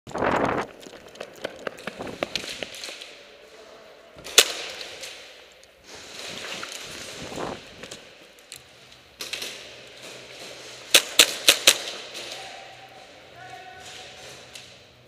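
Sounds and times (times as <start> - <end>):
airsoft guns firing: 4.2 - 5.2, 10.9 - 12.4
loud sharp crack: 4.2 - 5.3, 10.9 - 12.6.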